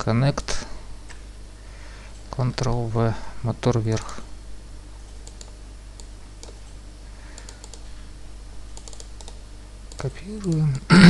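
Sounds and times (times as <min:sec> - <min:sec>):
low electrical hum: 0:00.0 - 0:11.0
computer keyboard keystrokes: 0:05.2 - 0:07.8, 0:08.7 - 0:10.7.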